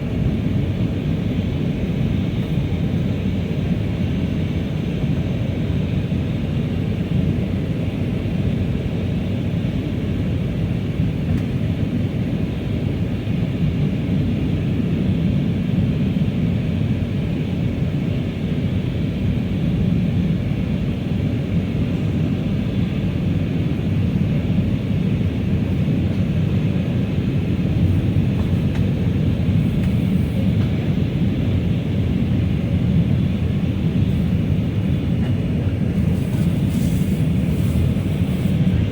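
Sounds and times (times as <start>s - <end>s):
airliner engines droning in cabin: 0.0s - 38.9s
rushing airflow hiss: 36.0s - 38.8s.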